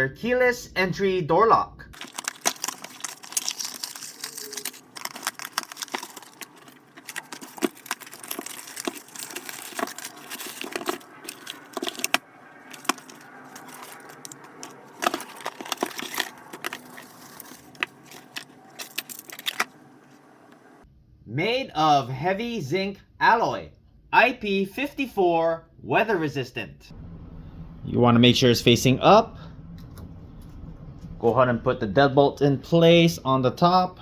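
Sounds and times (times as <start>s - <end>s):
door lock parts and keys clicking: 2.0s - 20.7s.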